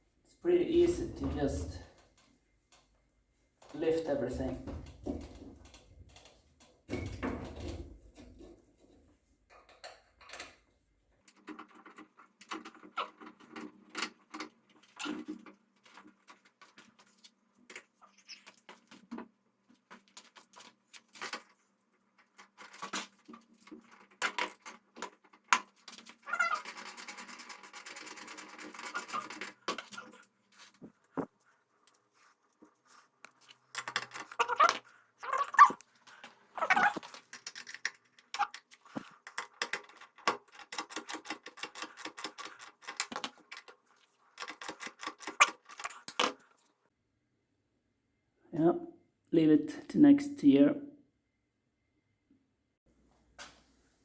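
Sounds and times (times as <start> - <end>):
parts and tools clicking: 33.2 - 46.5.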